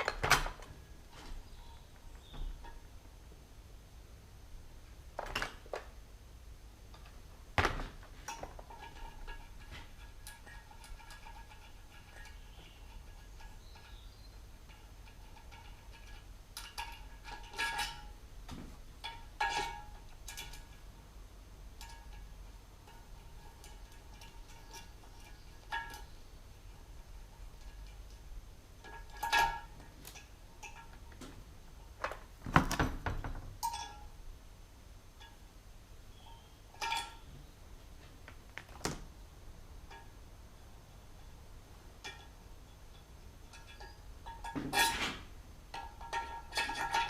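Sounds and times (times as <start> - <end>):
metal tools clinking: 33.6 - 34.2, 36.1 - 37.4.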